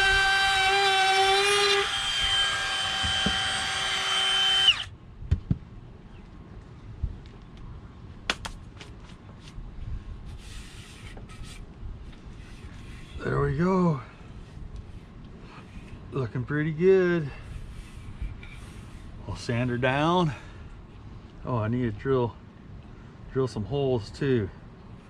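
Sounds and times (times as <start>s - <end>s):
electric router whining: 0.0s - 4.9s.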